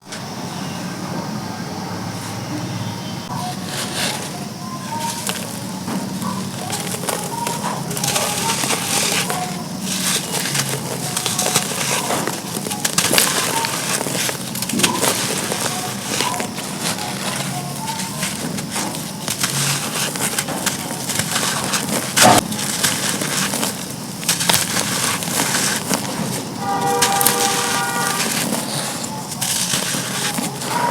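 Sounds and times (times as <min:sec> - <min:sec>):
charcoal being crushed: 0:03.3 - 0:30.9
loud crunch: 0:03.3 - 0:30.9.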